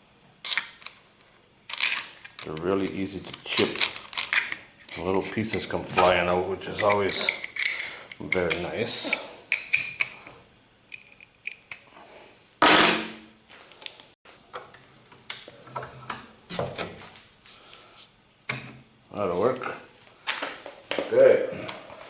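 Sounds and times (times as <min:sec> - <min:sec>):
metal tools clinking: 0:05.5 - 0:10.2.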